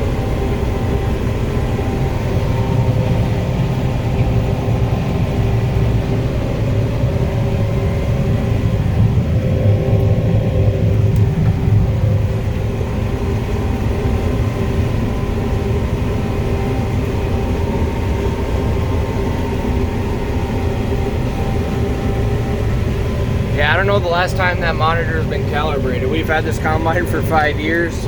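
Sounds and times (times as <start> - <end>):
combine harvester rumbling: 0.0 - 28.0.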